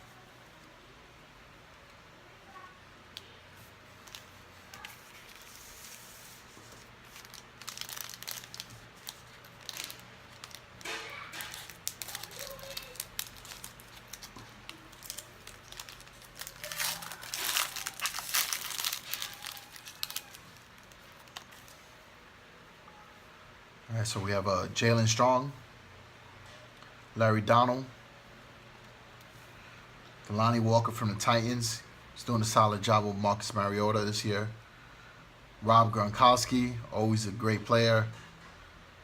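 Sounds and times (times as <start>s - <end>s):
plastic wrapper crinkling: 3.6s - 21.9s.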